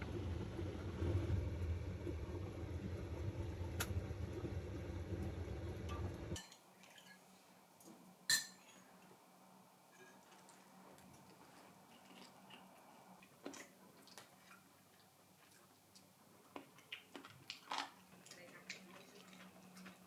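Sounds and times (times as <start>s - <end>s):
tableware clinking: 6.4s - 7.4s, 8.3s - 9.1s, 9.9s - 10.8s.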